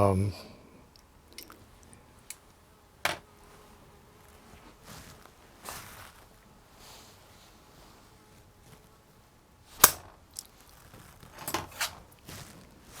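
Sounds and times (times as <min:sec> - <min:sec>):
sharp click: 0:09.8 - 0:10.5.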